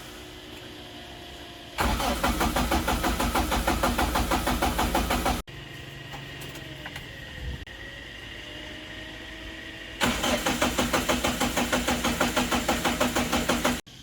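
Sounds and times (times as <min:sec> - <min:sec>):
starter motor cranking engine: 0:01.8 - 0:05.5, 0:10.0 - 0:13.9.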